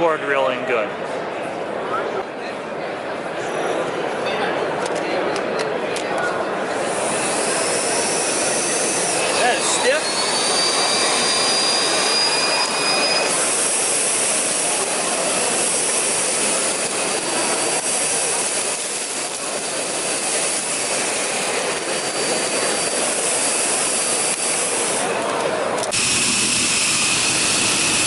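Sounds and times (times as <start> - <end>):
vacuum cleaner running: 6.9 - 25.2, 25.8 - 28.0.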